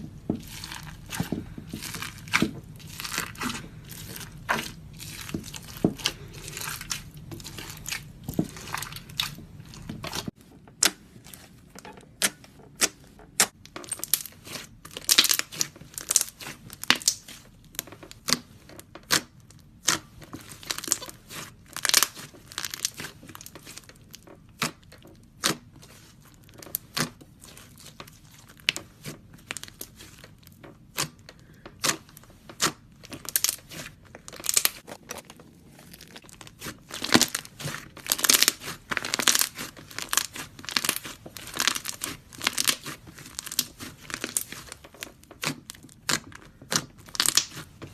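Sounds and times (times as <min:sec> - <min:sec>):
sticky slime pops and crackles: 0:12.2 - 0:18.4, 0:36.2 - 0:47.8.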